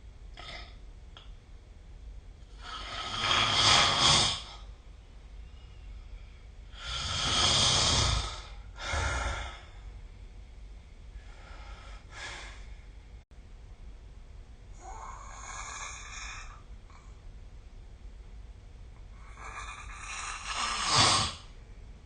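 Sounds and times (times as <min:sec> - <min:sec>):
person snoring heavily: 0:02.6 - 0:04.6, 0:06.7 - 0:09.7, 0:14.8 - 0:16.6, 0:19.2 - 0:21.5.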